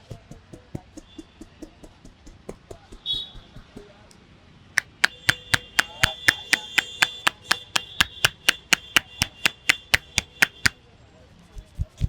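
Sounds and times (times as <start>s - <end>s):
hands slapping in massage: 4.8s - 10.8s.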